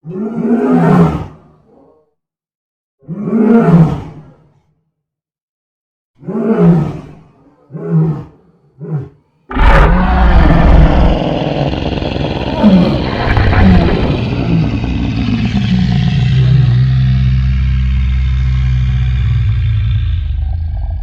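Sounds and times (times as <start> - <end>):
loud noisy sound with growling: 9.5 - 21.0
monster roars: 9.5 - 21.0.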